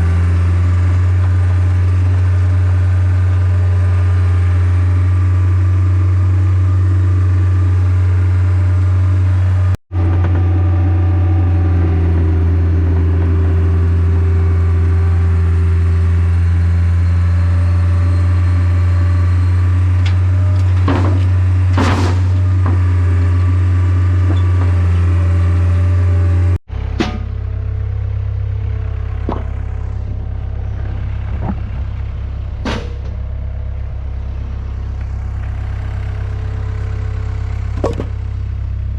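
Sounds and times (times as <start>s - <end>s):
large engine idling: 0.0s - 38.9s
sharp knocks and clatters: 29.1s - 29.8s, 37.7s - 38.2s.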